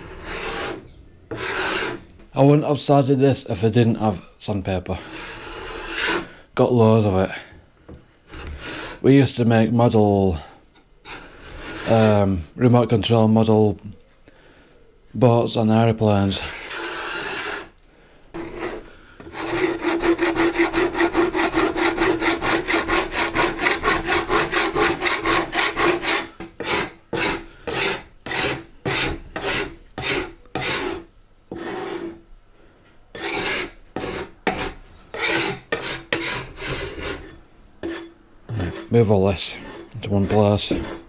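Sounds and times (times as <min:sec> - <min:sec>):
sandpaper rubbing on wood: 0:19.4 - 0:31.0.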